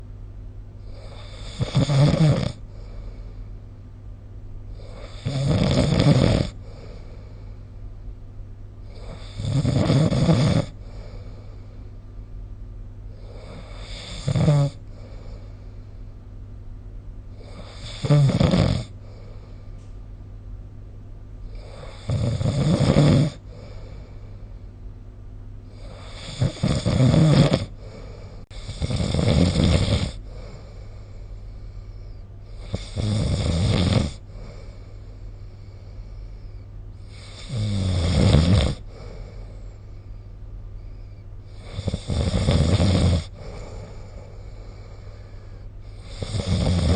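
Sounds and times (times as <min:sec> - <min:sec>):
steady low hum: 0:00.0 - 0:46.9
person snoring: 0:00.8 - 0:03.0, 0:04.7 - 0:07.4, 0:08.9 - 0:11.6, 0:13.1 - 0:15.5, 0:17.4 - 0:19.5, 0:21.5 - 0:24.2, 0:25.7 - 0:31.8, 0:32.5 - 0:35.0, 0:35.8 - 0:39.6, 0:41.5 - 0:46.9.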